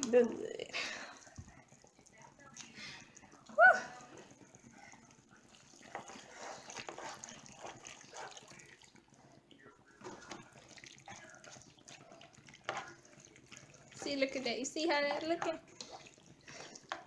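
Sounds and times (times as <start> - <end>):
spoon stirring macaroni in a pan: 0.0 - 17.0.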